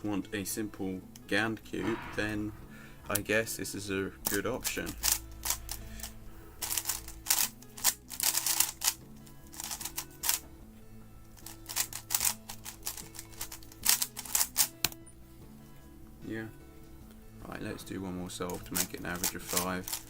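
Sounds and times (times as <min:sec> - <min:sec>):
speedcube clicking and clacking: 0:04.2 - 0:10.4, 0:11.4 - 0:15.0, 0:18.5 - 0:20.0.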